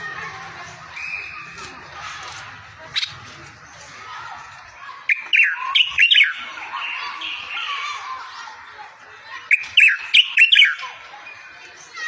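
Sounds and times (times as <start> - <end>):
songbird warbling: 5.1 - 6.4, 9.5 - 10.9.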